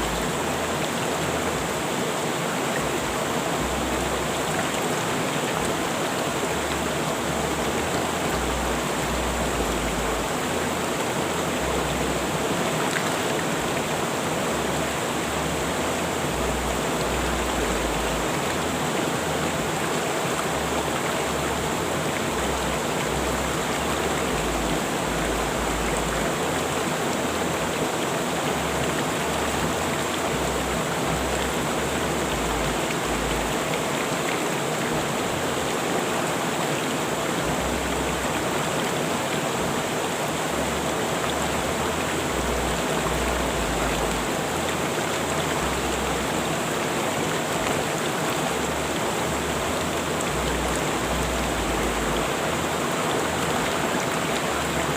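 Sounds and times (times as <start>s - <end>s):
river water rushing: 0.0s - 54.9s.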